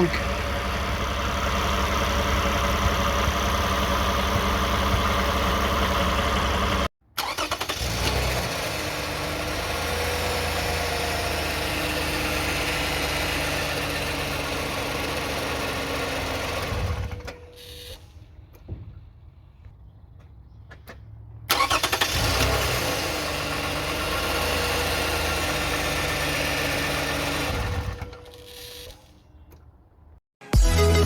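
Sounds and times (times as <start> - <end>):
car engine running: 0.0 - 6.9.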